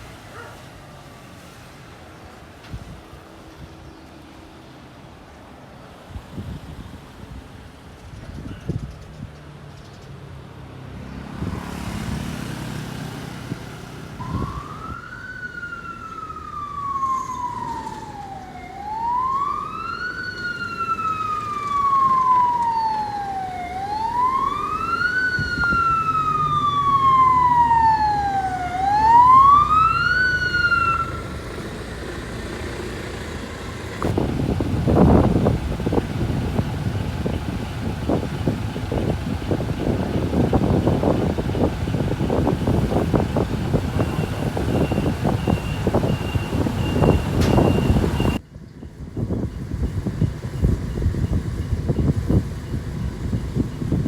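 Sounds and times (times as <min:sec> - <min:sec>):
fire engine wail siren: 0:11.5 - 0:48.4
truck engine running: 0:15.7 - 0:48.4.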